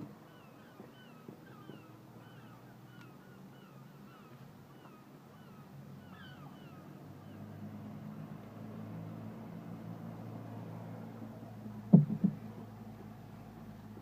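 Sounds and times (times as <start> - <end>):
gulls calling faintly: 0.0 - 8.6
low steady engine hum: 0.0 - 14.0.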